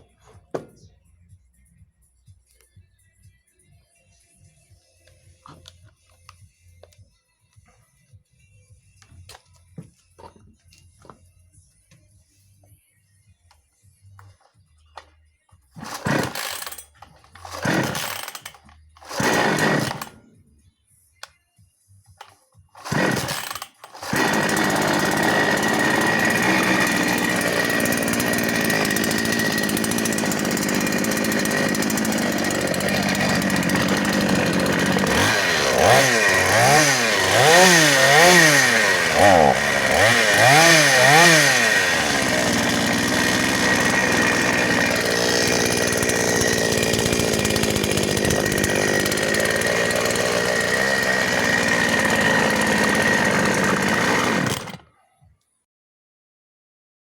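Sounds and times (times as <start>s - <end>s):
chainsaw idling and revving: 15.8s - 20.3s, 22.8s - 55.0s.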